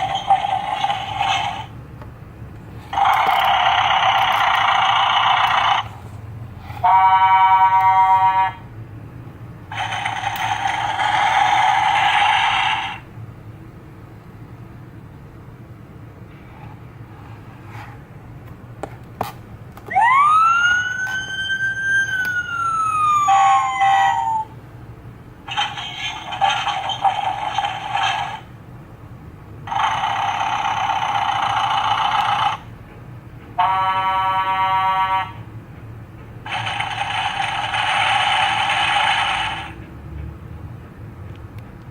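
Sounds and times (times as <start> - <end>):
emergency vehicle siren wailing: 19.9 - 24.5
buzzing horn blasts: 33.6 - 35.5.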